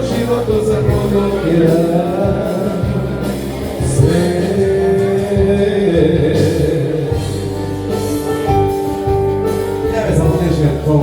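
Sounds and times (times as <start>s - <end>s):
man singing: 0.0s - 8.2s, 9.8s - 11.0s
live band playing pop song: 0.0s - 11.0s.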